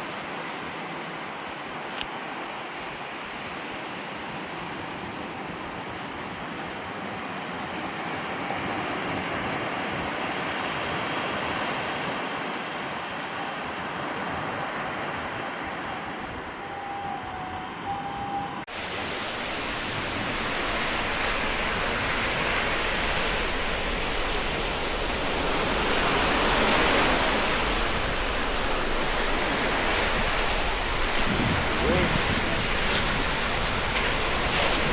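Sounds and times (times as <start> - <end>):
surf breaking on shore: 18.7 - 34.9.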